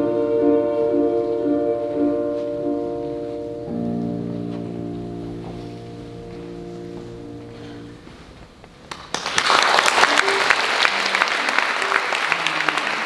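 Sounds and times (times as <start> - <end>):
audience applause: 8.9 - 13.0.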